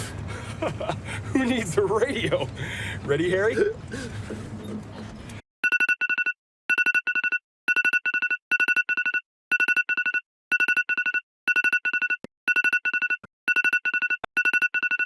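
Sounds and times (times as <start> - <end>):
electronic ringtone beeping: 5.6 - 15.0.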